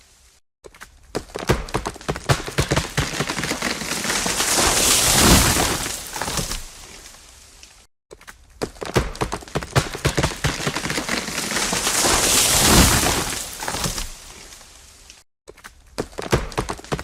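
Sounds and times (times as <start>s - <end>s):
wood cracking: 0.7s - 17.0s
tree crashing down: 2.0s - 7.2s, 9.4s - 14.9s
branches swishing: 2.6s - 7.9s, 10.0s - 15.2s.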